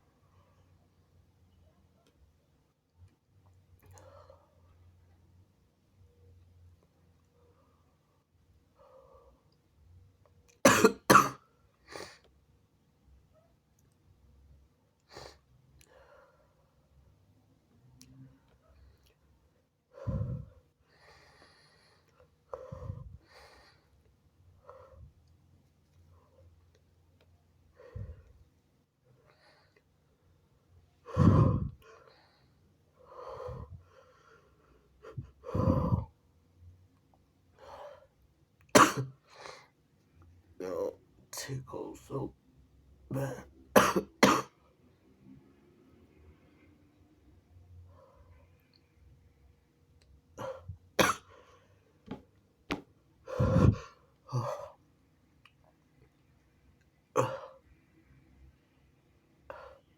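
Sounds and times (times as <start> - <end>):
person stifling sneezes: 38.8 - 39.2, 43.1 - 44.5, 50.4 - 51.4.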